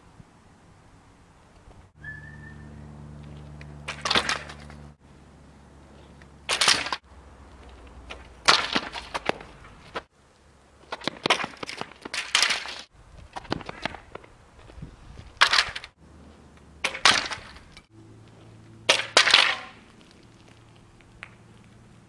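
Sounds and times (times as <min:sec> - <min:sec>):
bike clattering impacts on ground: 0:03.8 - 0:04.8, 0:08.1 - 0:10.0, 0:16.8 - 0:17.9, 0:18.9 - 0:20.0.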